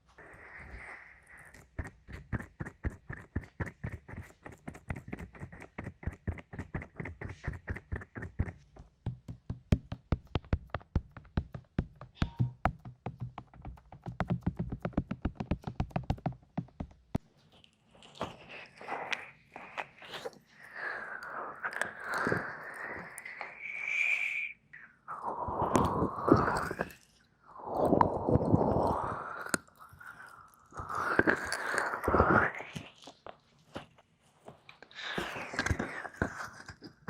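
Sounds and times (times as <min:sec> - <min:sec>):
quick sharp tapping: 0:01.7 - 0:17.2.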